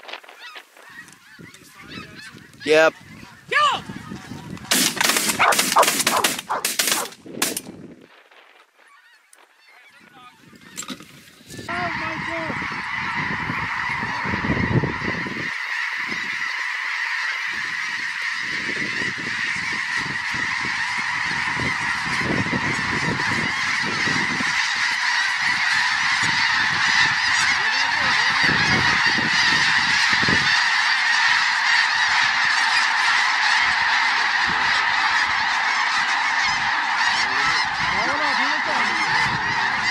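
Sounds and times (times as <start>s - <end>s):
flock of geese honking: 0.0s - 7.7s, 8.3s - 39.9s
shotgun shots: 4.7s - 7.7s.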